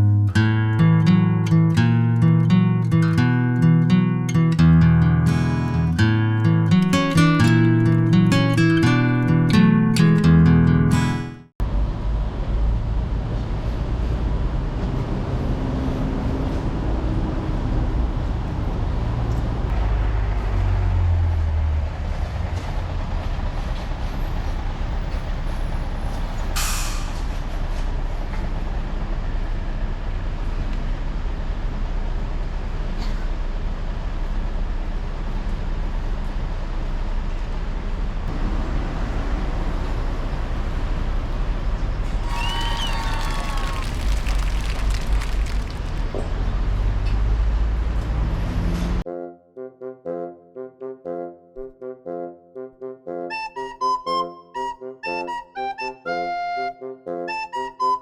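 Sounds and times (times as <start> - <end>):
train rumbling: 11.8 - 30.4
air release hiss: 26.6 - 27.2.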